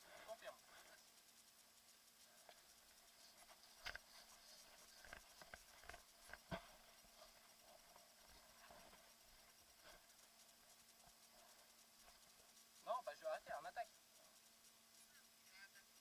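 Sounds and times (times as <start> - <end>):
faint clicks and taps: 0.7 - 12.7.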